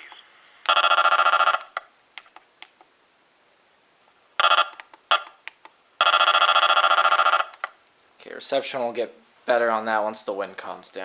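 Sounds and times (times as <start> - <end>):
scattered clicks: 4.6 - 5.8.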